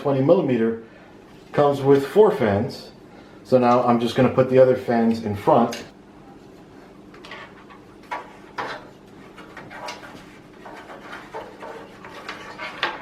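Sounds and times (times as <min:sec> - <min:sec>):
plastic fans knocking and clicking: 0:07.1 - 0:13.0
plastic rubbing: 0:07.2 - 0:13.0.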